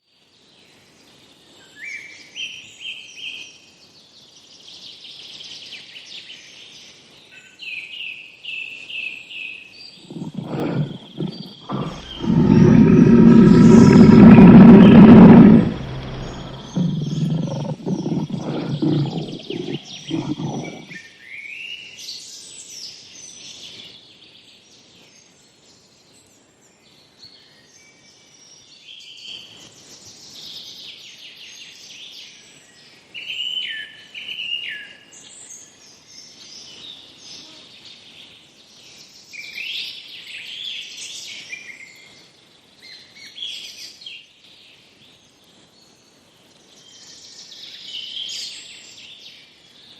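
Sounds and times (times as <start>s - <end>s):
lion grunting: 10.1s - 21.0s.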